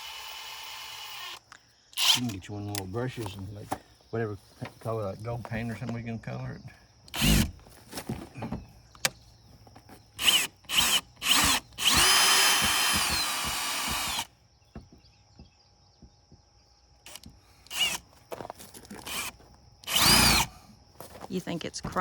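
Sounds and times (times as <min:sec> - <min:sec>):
electric drill running: 0:00.0 - 0:02.3, 0:07.1 - 0:07.5, 0:10.2 - 0:14.3, 0:17.1 - 0:18.0, 0:19.0 - 0:20.5.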